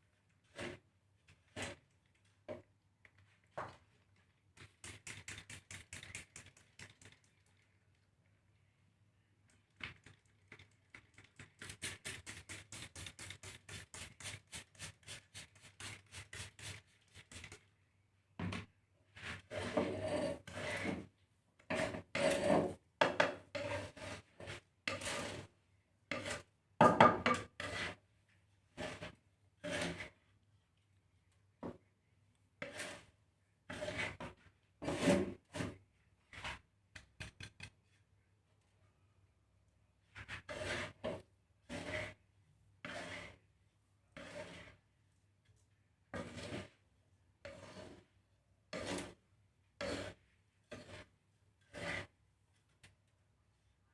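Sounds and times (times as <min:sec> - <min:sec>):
spatula scraping grain in a pan: 0:00.4 - 0:01.9, 0:04.6 - 0:07.1, 0:11.6 - 0:17.6, 0:19.1 - 0:21.1, 0:21.7 - 0:26.5, 0:27.3 - 0:30.3, 0:32.6 - 0:36.6, 0:40.0 - 0:52.7.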